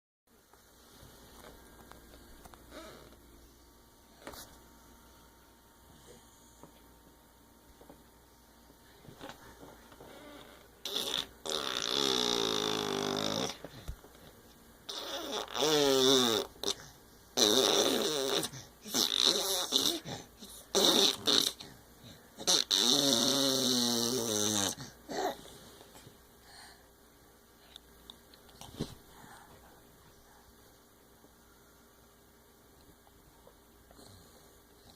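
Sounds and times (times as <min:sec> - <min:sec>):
baby snoring: 0:09.4 - 0:13.6, 0:14.9 - 0:25.4.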